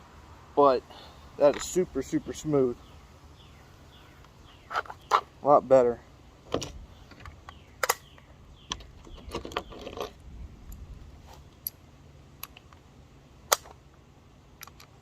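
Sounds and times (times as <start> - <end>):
metallic rifle clicks: 14.6 - 15.0.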